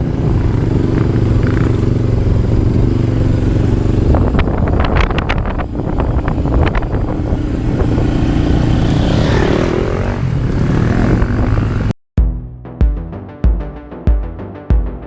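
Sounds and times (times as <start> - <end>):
atv engine running: 0.0 - 11.9
wind on microphone: 3.5 - 11.9
music with heavy drum beat: 12.2 - 15.0.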